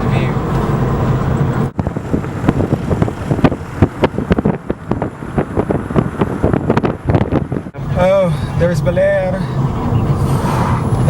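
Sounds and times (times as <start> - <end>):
car hum: 0.0 - 11.0
road noise: 0.0 - 11.0
wind on microphone: 0.9 - 7.8.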